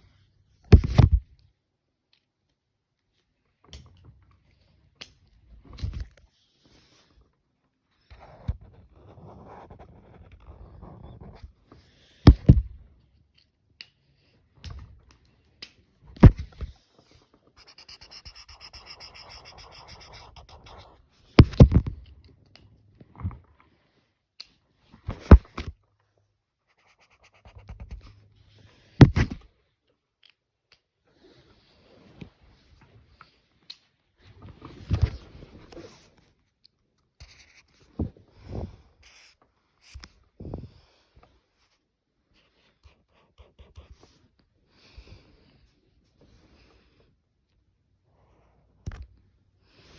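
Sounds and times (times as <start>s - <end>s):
colouring strokes scratching: 17.6s - 21.2s, 26.7s - 28.1s.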